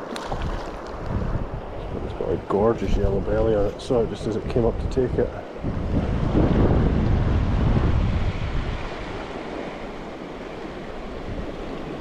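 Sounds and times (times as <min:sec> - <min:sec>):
river water rushing: 0:00.0 - 0:02.6, 0:05.4 - 0:12.0
wind buffeting microphone: 0:00.0 - 0:12.0.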